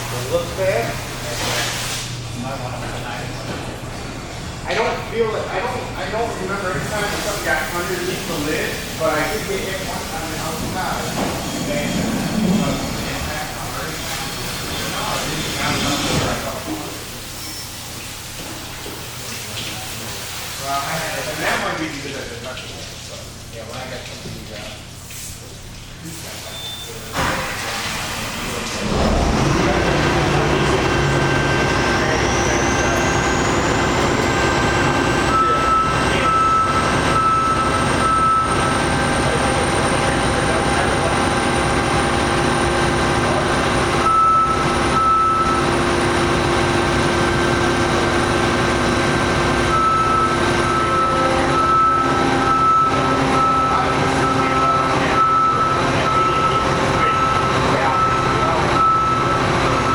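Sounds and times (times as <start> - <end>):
heavy vehicle engine whining: 5.8 - 16.5, 27.2 - 59.9
reversing beeper: 29.0 - 59.9.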